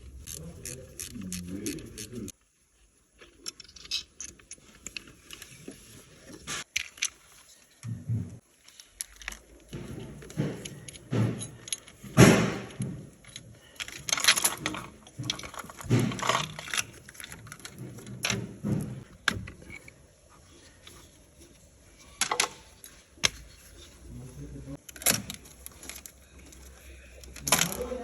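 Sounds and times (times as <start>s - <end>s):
metal tools clinking and rattling: 3.2s - 5.5s, 8.8s - 20.0s.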